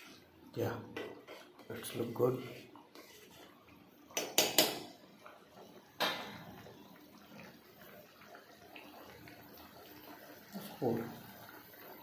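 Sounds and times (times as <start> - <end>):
utensils clattering on a pot: 4.2 - 5.0.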